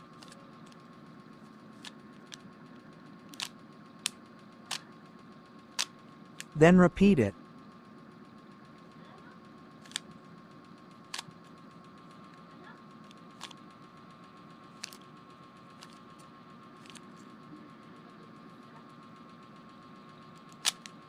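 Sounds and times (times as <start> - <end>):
faint hum with thin whine: 0.0 - 21.0
plastic puzzle cube clicks: 3.3 - 4.8, 20.6 - 20.9.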